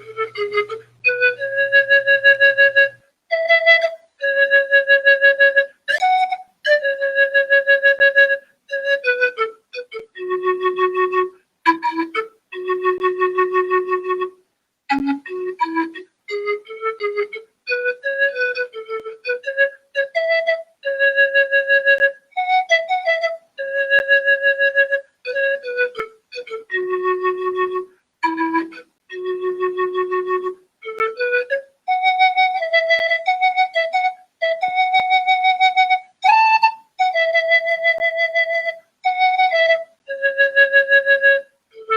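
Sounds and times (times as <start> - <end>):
wind instrument playing slow melody: 0.0 - 41.9.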